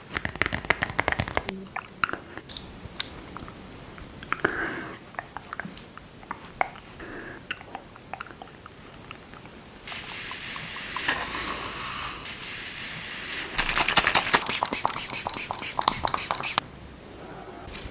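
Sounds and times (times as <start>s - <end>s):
small clicks and sticky crackles: 5.2s - 11.2s
steady hiss: 8.7s - 17.9s.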